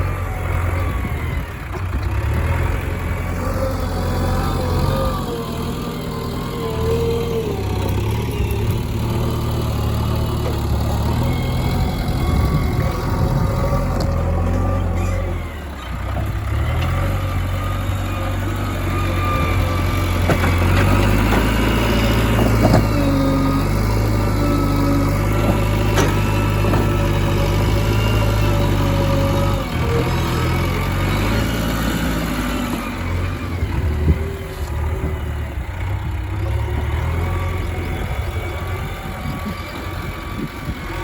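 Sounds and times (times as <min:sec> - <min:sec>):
diesel engine running: 0:00.0 - 0:41.0.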